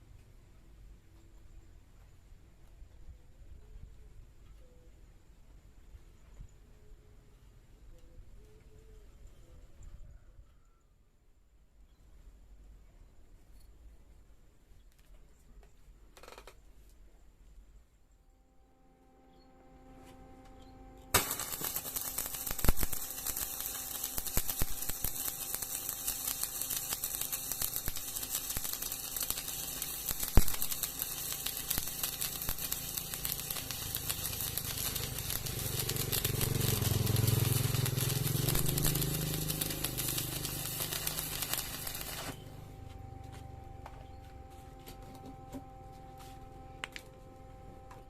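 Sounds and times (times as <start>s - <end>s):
low hum: 18.1s - 48.0s
electric arc welding crackle: 21.1s - 42.5s.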